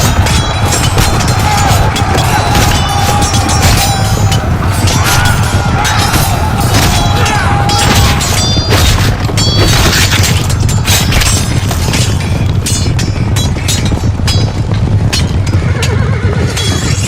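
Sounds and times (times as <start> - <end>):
men shouting war cry: 0.0 - 9.2
clashing impacts and crashes: 0.0 - 17.0
deep rumble: 0.0 - 17.0.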